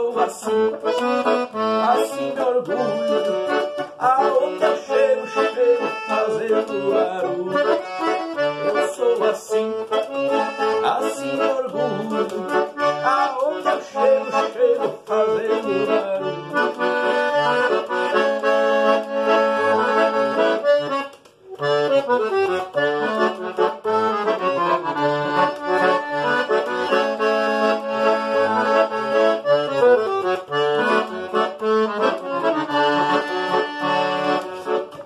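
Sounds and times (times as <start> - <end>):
accordion melody: 0.0 - 35.0.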